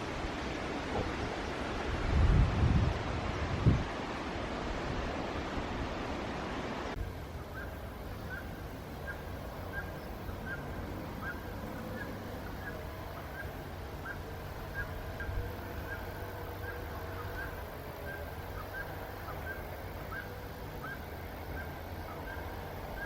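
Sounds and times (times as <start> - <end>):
wind buffeting microphone: 0.0 - 6.2
small bird calling: 7.1 - 23.0.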